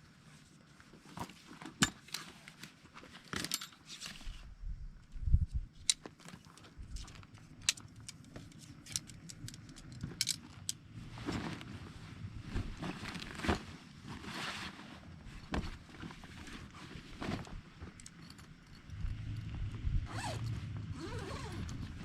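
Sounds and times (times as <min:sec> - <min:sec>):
canvas rustling: 0:10.9 - 0:18.0, 0:18.9 - 0:22.0
tent handling clicks: 0:15.4 - 0:22.0
light metal clinks: 0:17.9 - 0:20.6.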